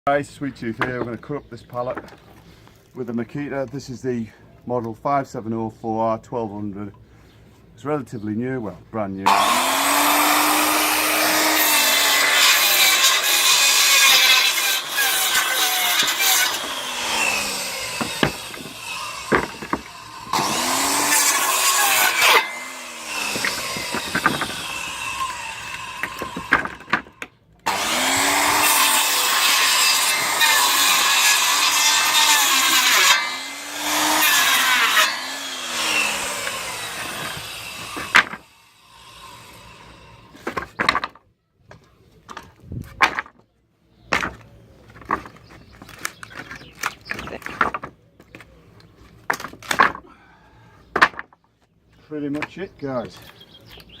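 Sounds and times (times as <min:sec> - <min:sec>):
circular saw cutting wood: 0:09.3 - 0:27.1, 0:27.7 - 0:40.6.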